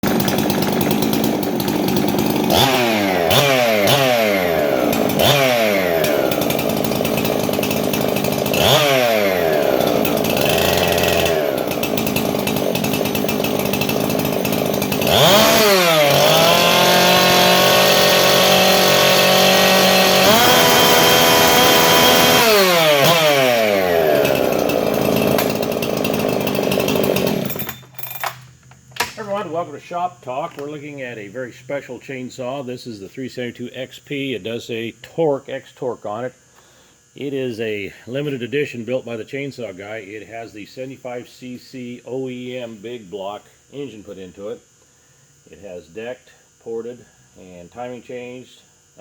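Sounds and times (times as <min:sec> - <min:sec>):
chainsaw revving: 0:00.0 - 0:27.9.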